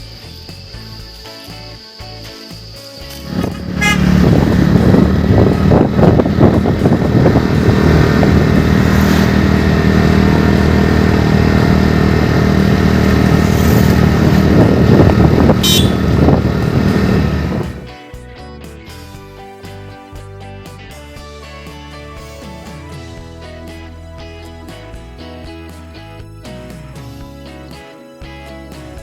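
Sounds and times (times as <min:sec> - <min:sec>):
vehicle engine running: 0:03.1 - 0:17.9.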